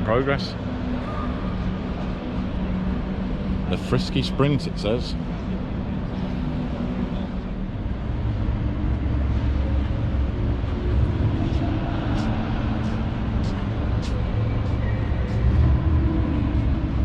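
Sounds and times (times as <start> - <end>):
low rumble: 5.6 - 17.0.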